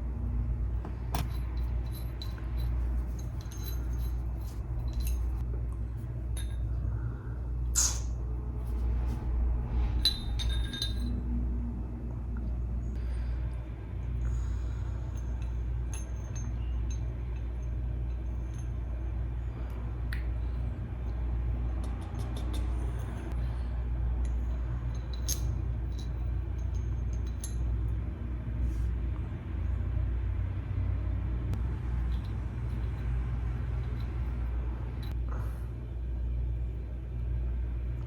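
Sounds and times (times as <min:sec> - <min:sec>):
low rumble: 0:00.0 - 0:38.0
metallic clicks and clinks: 0:01.0 - 0:05.4, 0:21.8 - 0:23.4, 0:24.2 - 0:27.9.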